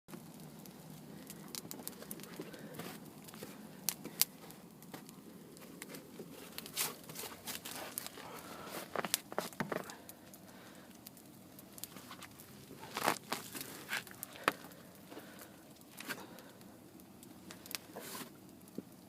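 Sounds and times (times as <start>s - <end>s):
campfire crackling and popping: 0.1s - 19.0s
low steady fire hiss: 0.1s - 19.0s.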